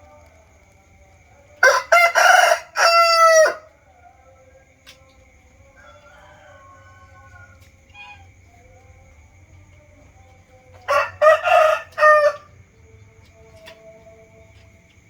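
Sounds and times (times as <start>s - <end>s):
rooster crowing: 1.6s - 8.8s, 10.5s - 13.0s.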